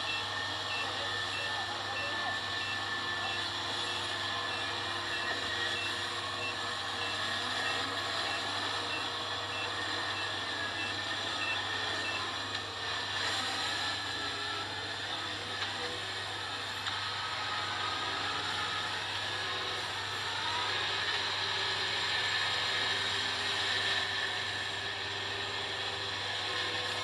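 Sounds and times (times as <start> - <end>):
reverse alarm beeping: 0.0 - 12.3
combine harvester running: 0.0 - 27.0.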